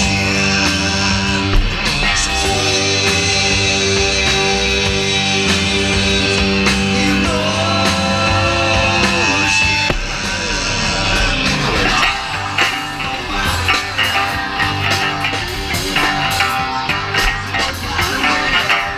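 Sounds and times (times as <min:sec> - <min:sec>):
electric guitar: 0:00.0 - 0:18.9
live rock band playing: 0:11.5 - 0:18.9.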